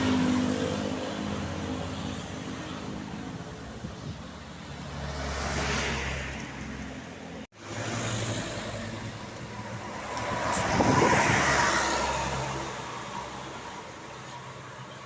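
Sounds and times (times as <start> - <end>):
bus engine climbing: 6.0 - 15.0.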